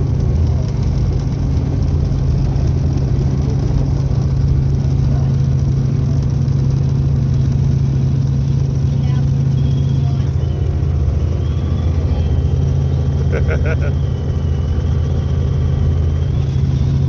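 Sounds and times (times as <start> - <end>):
helicopter engine and rotor drone: 0.0 - 17.0.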